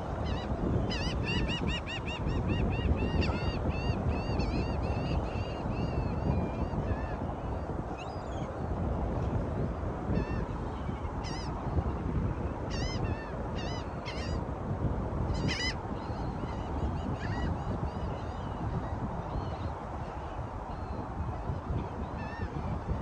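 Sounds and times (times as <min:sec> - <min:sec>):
wind: 0:00.0 - 0:23.0.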